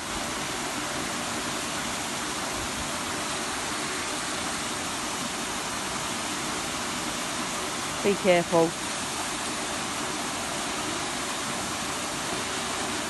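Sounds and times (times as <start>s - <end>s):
steady rushing hiss: 0.0s - 13.0s.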